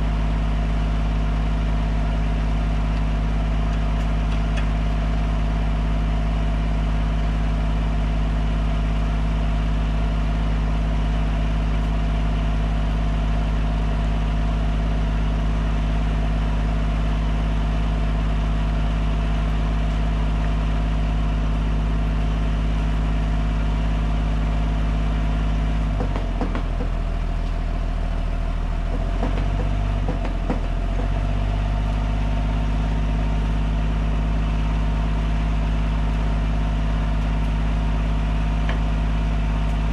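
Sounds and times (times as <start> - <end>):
engine idling: 0.0 - 39.9
light engine knocks: 25.9 - 27.1, 28.9 - 31.4.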